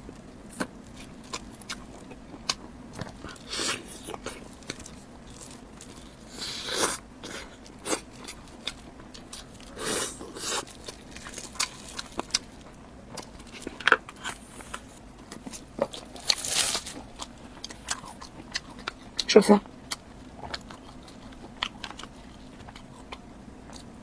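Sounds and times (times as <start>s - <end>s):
person chewing: 0.0s - 24.0s
crunchy bites: 0.5s - 19.2s.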